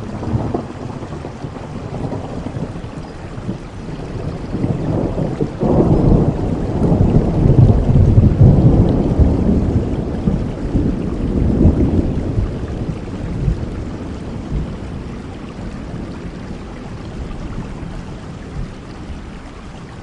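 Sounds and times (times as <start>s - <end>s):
low rumble of thunder: 0.0s - 20.0s
steady rain: 0.0s - 20.0s.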